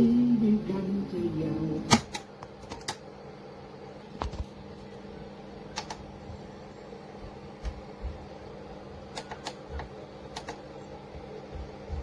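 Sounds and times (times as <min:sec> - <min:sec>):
faint steady hum: 0:00.0 - 0:12.0
clicks and knocks of buttons: 0:09.1 - 0:10.6.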